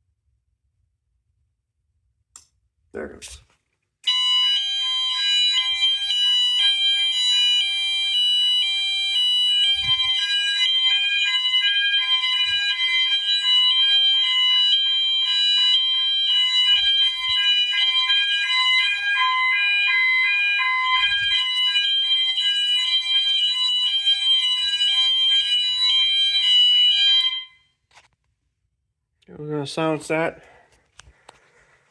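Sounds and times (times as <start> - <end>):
fire alarm horns and sounders: 4.0 - 28.0.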